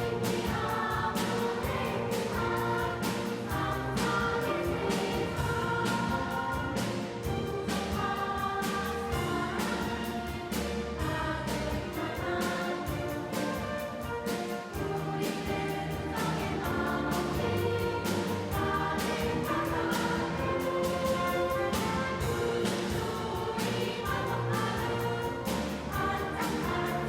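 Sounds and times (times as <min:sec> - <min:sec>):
children's choir singing: 0:00.0 - 0:27.0
orchestral accompaniment: 0:00.0 - 0:27.0.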